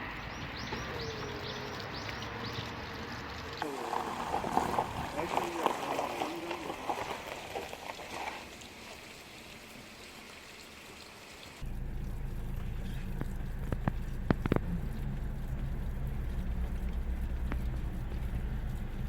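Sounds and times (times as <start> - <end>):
wind buffeting microphone: 4.1 - 5.7.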